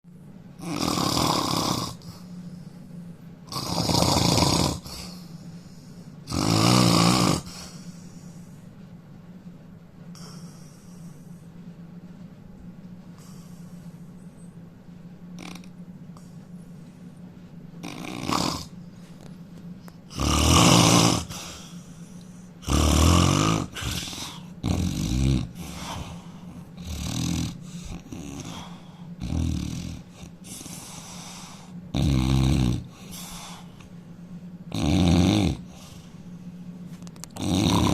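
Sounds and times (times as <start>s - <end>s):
man snoring loudly: 0.6s - 2.0s, 3.5s - 5.1s, 6.3s - 7.6s, 17.8s - 18.7s, 20.1s - 21.5s, 22.6s - 26.2s, 26.8s - 31.2s, 31.9s - 33.5s, 34.7s - 35.8s, 37.4s - 37.9s.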